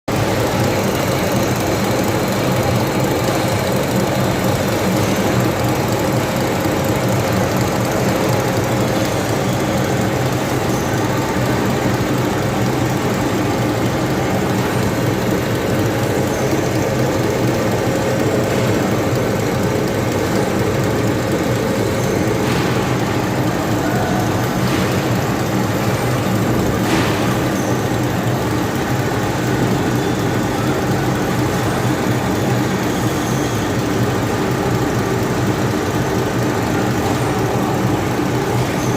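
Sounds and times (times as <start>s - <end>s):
homogenizer machine drone: 0.1s - 38.9s.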